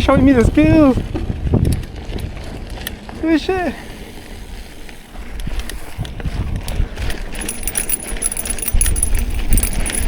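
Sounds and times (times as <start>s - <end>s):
bike tyres rumbling on dirt: 0.0s - 8.8s
wind buffeting microphone: 0.0s - 10.0s
chain and frame rattling: 6.6s - 10.0s.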